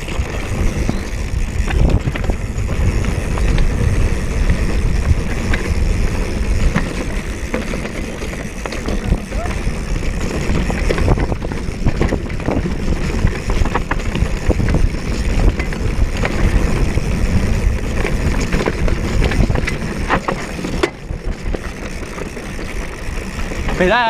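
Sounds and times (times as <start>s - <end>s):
wind on microphone: 0.0s - 7.3s
bike rattling over bumps: 0.0s - 24.0s
bike tyre noise: 0.0s - 24.0s.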